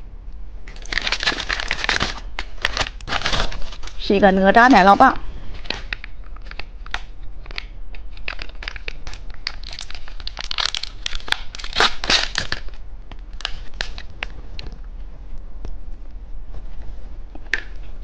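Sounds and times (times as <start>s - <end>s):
plastic wrapper crinkling: 0.7s - 14.3s.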